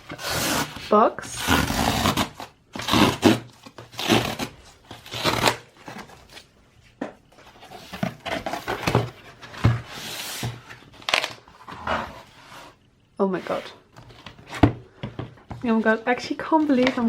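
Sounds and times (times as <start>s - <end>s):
cardboard tearing: 0.0s - 6.5s.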